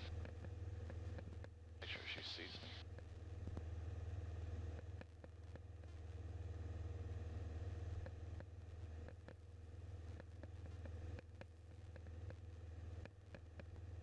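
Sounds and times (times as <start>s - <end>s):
aircraft engine droning: 0.0s - 11.2s.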